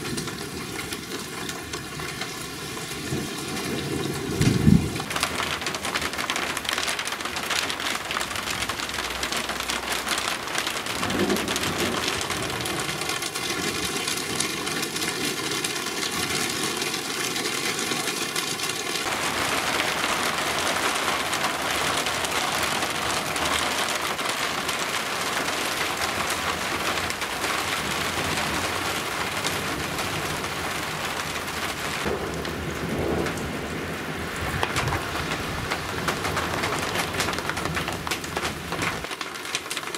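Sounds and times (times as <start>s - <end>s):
heavy rain pouring: 0.0s - 39.9s
thunder rumbling: 3.0s - 14.2s, 19.0s - 39.1s.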